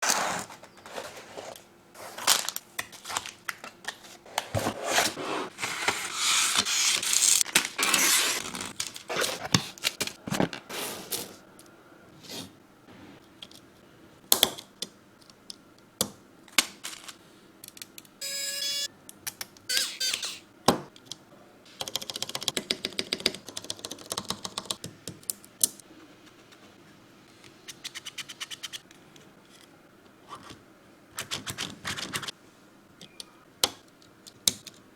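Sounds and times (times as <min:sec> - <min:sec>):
rustling and scraping: 0:00.0 - 0:11.4
brief ringing tone: 0:18.2 - 0:18.9, 0:19.7 - 0:20.4
keyboard parts clicking and snapping: 0:33.0 - 0:34.9.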